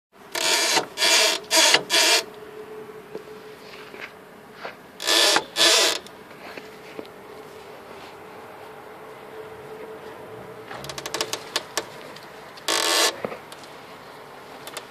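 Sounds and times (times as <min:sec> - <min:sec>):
faint steady hum: 0:00.2 - 0:14.9
loud creaking squeaks: 0:00.3 - 0:02.4, 0:05.0 - 0:06.1, 0:10.7 - 0:13.3.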